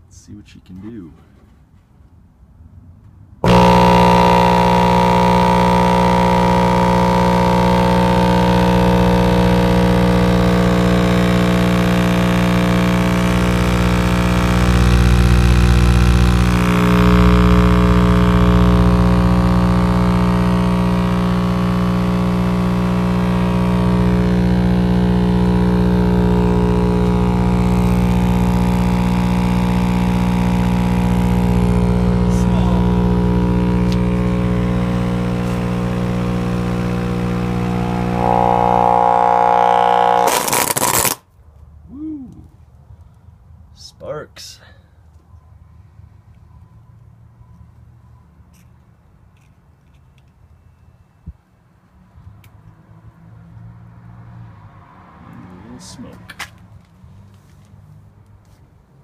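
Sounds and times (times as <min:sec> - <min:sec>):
subwoofer buzzing hum: 0:03.4 - 0:41.2.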